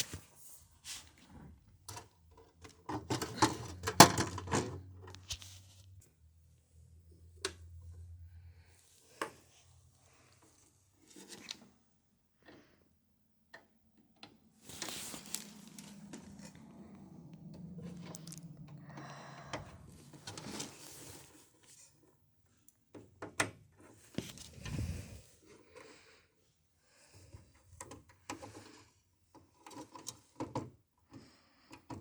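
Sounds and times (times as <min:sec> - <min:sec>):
scraping and rustling: 0:14.6 - 0:21.5.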